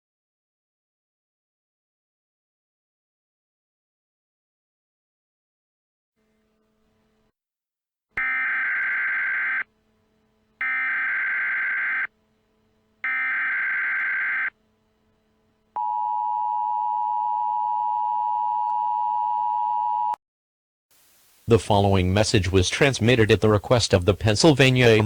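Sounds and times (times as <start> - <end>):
two-tone attention signal: 8.2 - 9.7, 10.6 - 12.1, 13.0 - 14.5
data header bursts: 10.6 - 12.1, 13.0 - 14.5.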